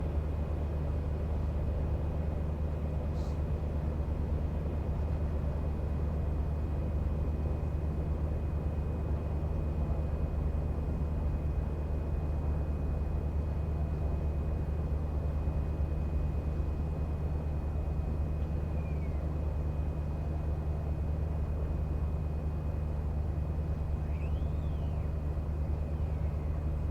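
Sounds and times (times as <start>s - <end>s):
low engine drone: 2.7s - 26.9s
faint high chirp: 18.7s - 19.2s, 24.0s - 25.1s.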